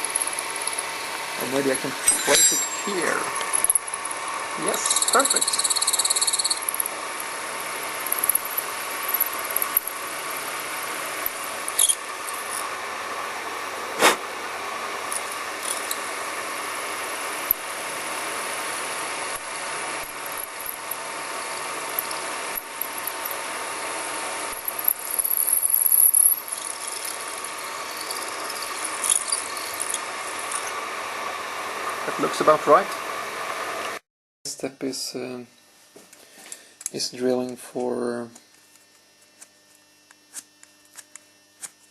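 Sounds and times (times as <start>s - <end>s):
drill bit squealing in metal: 0.0s - 7.0s, 24.5s - 30.8s
milling machine whine: 0.0s - 34.0s.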